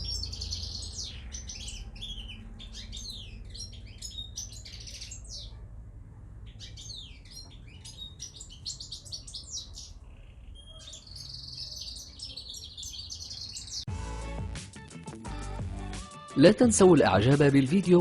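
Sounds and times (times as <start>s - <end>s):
small birds chirping: 0.0s - 13.9s.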